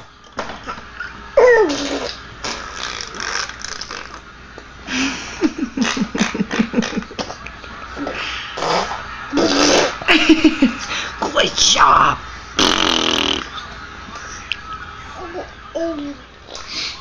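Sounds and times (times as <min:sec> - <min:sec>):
baby blowing raspberries: 0:01.4 - 0:04.2, 0:08.0 - 0:10.0, 0:12.6 - 0:13.5.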